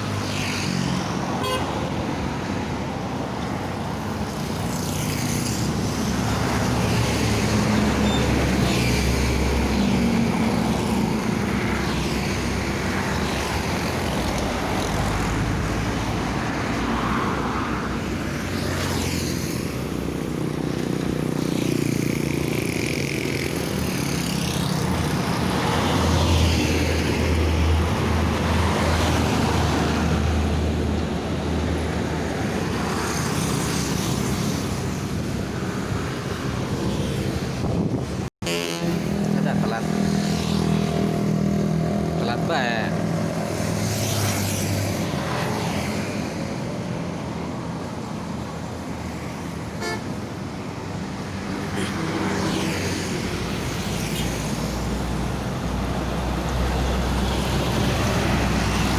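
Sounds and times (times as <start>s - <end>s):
heavy vehicles passing: 0.0s - 58.9s.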